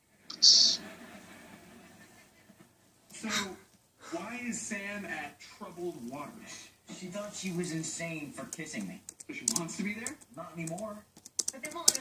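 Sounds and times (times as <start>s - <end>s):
studio audience laughing: 0.8s - 2.9s.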